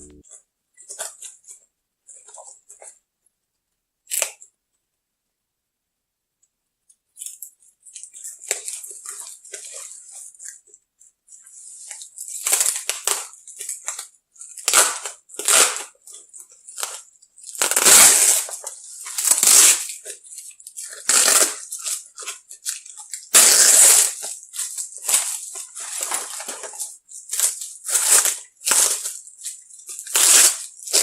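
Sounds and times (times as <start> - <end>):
packaging crinkling and tearing: 12.0 - 31.0.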